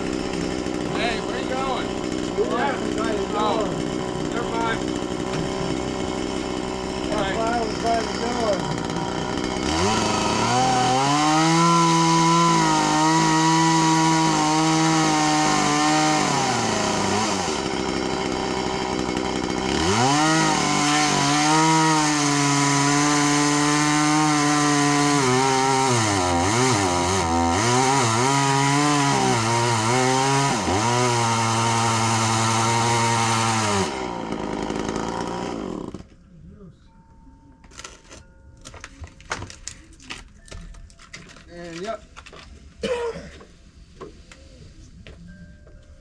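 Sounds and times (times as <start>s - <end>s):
chainsaw revving: 0.0s - 36.1s.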